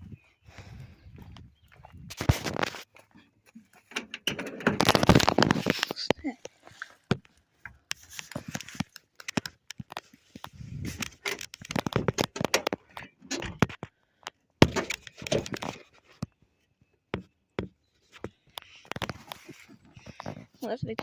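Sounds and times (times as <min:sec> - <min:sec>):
hard objects clattering: 0:03.9 - 0:06.0.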